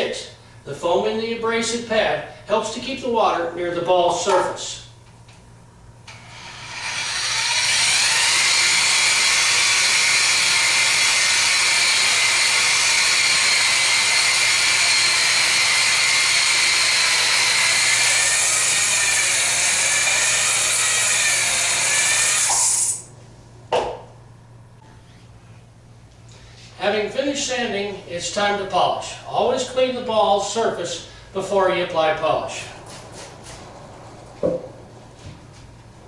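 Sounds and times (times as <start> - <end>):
drill motor whine: 6.1 - 23.0.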